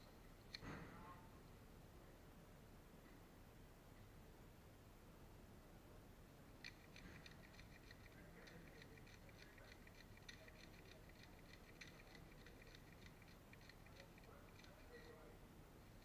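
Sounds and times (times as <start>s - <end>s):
background hiss: 0.0s - 16.0s
faint irregular clicking: 6.6s - 15.2s.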